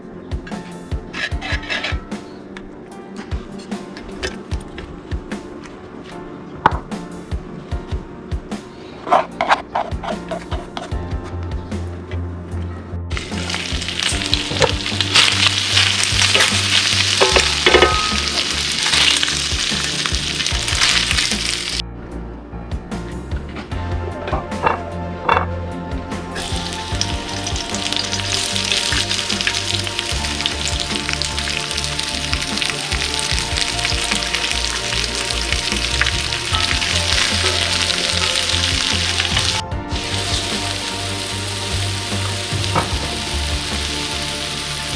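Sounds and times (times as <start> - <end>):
background music: 0.0 - 44.9
food sizzling in a pan: 13.2 - 21.8, 26.4 - 44.9.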